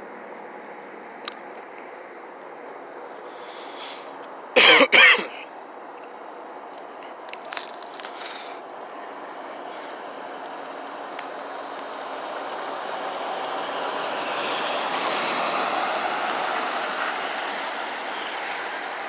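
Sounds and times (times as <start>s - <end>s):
vehicle passing on road: 5.4s - 19.0s.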